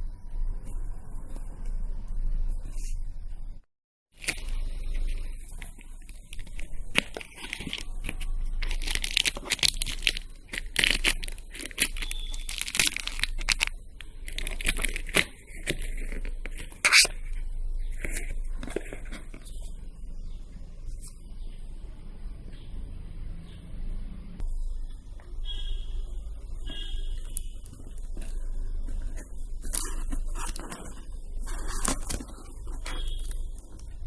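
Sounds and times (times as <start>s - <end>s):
steady low hum: 0.0s - 34.0s
cardboard packaging tearing: 4.2s - 17.3s, 27.9s - 33.8s.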